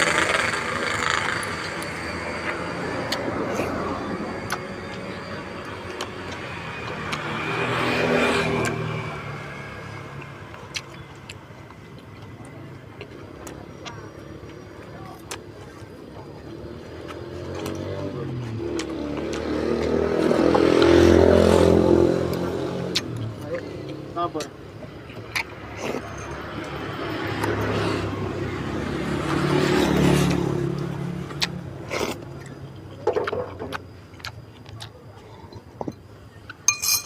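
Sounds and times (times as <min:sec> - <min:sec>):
road vehicles passing: 0:00.0 - 0:37.0.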